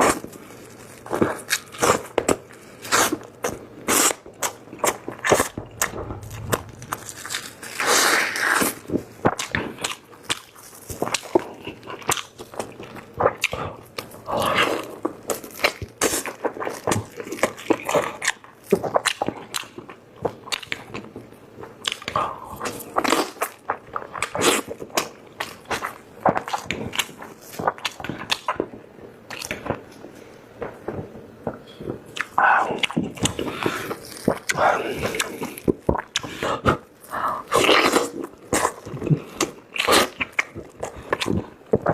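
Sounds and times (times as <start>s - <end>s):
rushing noise: 5.4s - 8.1s.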